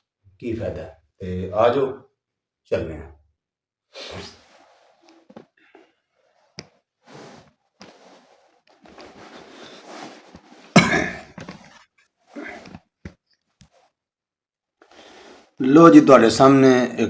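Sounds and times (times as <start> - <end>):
man coughing: 10.8 - 11.4
throat-clearing: 10.8 - 11.4.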